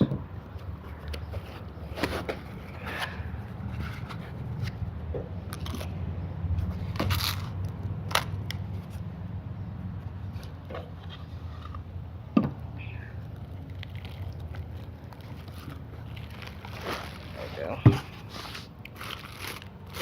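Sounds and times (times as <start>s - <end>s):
knocks of packing foam and box: 17.8s - 18.6s
packaging being pulled apart: 18.3s - 20.0s.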